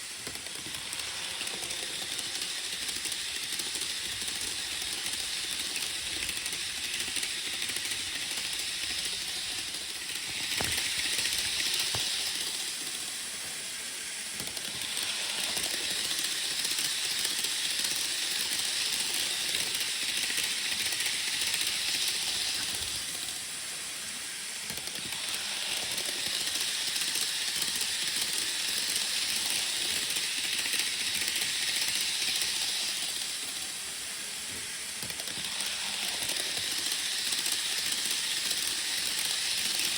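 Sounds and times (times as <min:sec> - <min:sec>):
model train rolling on track: 0:00.0 - 0:39.9.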